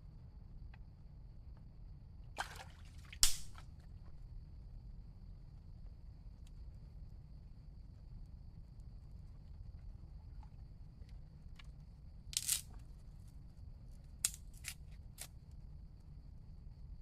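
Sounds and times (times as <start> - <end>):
sharp snaps: 3.2 - 3.6, 12.4 - 12.6.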